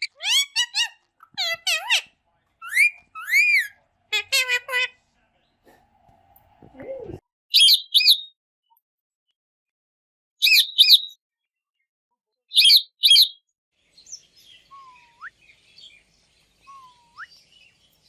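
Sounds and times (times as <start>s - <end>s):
parrots screeching: 0.0s - 5.0s, 10.4s - 11.1s
faint bird twittering: 14.0s - 18.0s.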